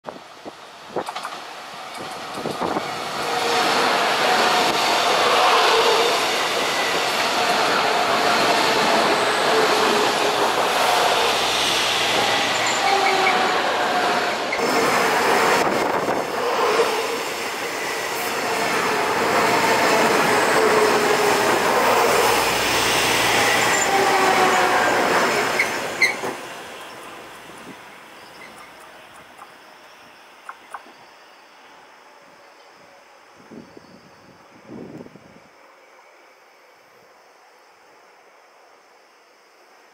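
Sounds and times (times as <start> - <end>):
electric train whining as it slows: 0.1 - 39.9.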